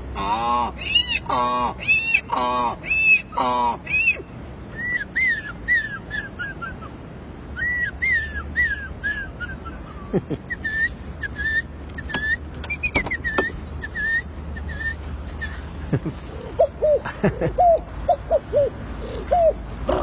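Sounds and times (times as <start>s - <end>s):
man whistling bird calls: 3.9s - 15.6s.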